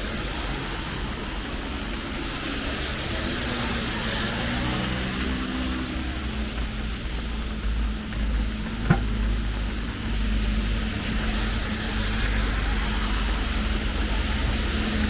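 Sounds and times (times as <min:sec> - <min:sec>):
rain falling: 0:00.0 - 0:15.0.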